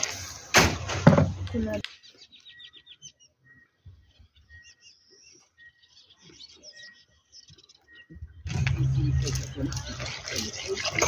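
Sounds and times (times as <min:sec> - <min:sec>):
birds chirping: 0:01.4 - 0:11.0
water splashing: 0:08.5 - 0:11.0.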